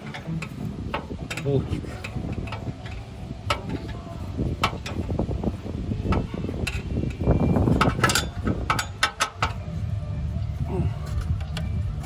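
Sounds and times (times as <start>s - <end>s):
metallic clicks and knocks of hand tools: 6.1s - 9.6s.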